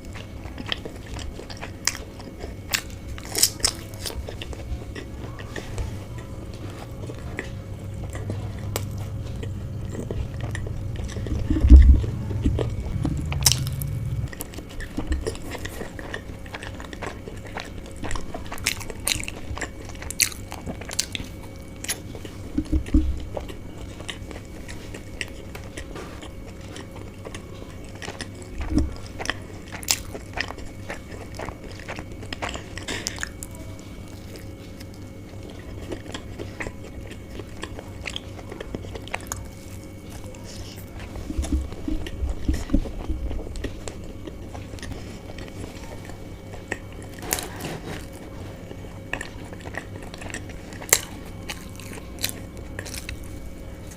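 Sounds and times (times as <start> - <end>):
biting and chewing food: 0.0 - 53.9
loud low bump: 8.9 - 14.4.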